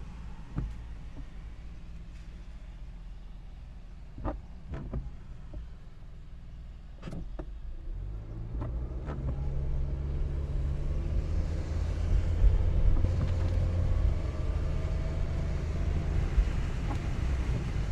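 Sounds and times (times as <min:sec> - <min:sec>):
car engine and road rumble: 0:00.0 - 0:17.9
rain and tyre spray hiss: 0:11.3 - 0:17.9.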